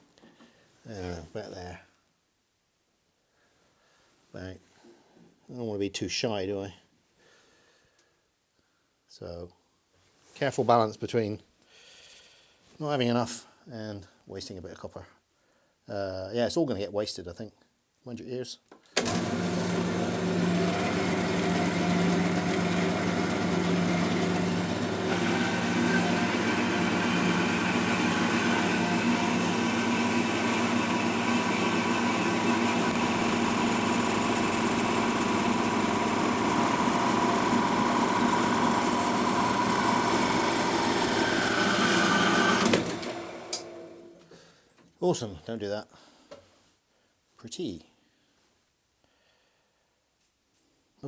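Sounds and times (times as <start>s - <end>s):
power tool cutting metal: 19.0s - 44.1s.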